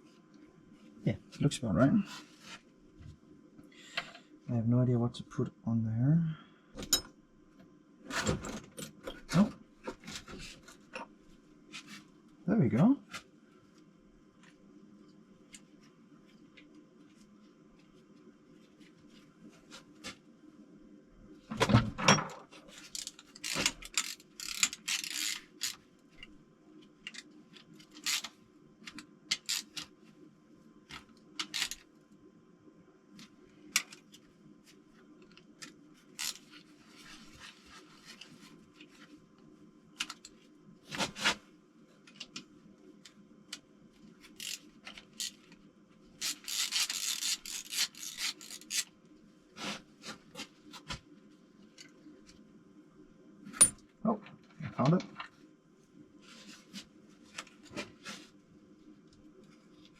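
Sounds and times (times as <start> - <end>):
metal hardware clicking and clinking: 6.8 - 7.2, 53.5 - 53.9
rubbing and rustling: 36.0 - 39.3.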